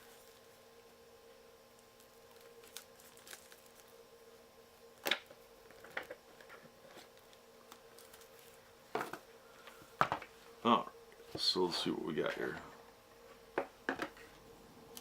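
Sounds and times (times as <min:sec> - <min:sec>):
packaging crackling: 0:01.9 - 0:03.9, 0:07.2 - 0:08.6.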